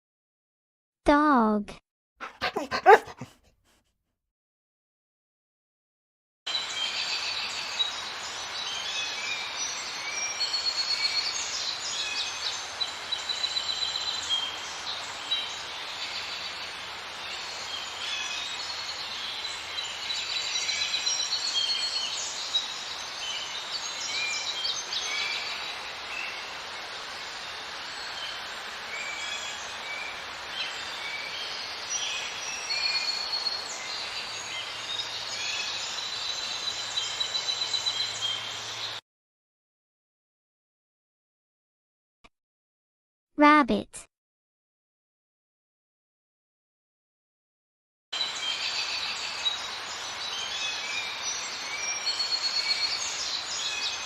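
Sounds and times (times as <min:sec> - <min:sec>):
outdoor background hiss: 0:06.5 - 0:39.0, 0:48.2 - 0:54.0.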